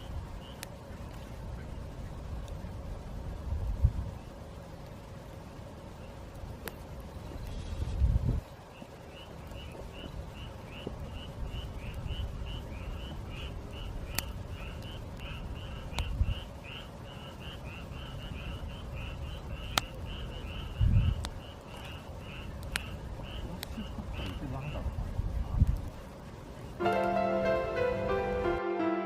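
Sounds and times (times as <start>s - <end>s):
campfire crackling and popping: 0.0s - 28.3s
frog croaking: 9.1s - 25.0s.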